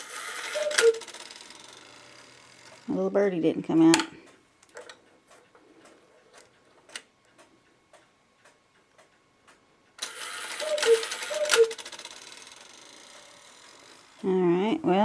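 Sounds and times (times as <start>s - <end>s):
clockwork whirring: 0.0s - 3.2s, 9.5s - 15.0s
two-note cuckoo call: 0.5s - 1.0s, 10.6s - 11.8s.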